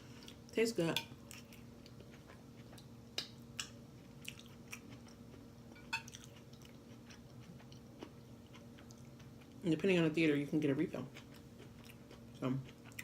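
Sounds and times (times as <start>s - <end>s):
faint steady hum: 0.0s - 13.0s
person chewing food: 1.2s - 9.6s, 11.0s - 13.0s.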